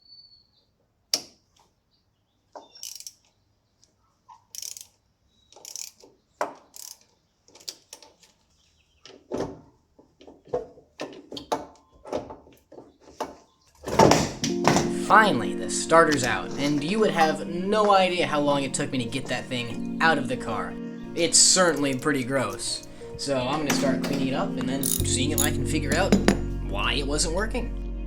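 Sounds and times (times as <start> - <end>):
ratchet wrench clicking: 2.8 - 3.3, 4.5 - 5.0, 5.6 - 6.1, 6.7 - 7.8, 24.8 - 25.5
tools knocking on metal: 24.8 - 26.5.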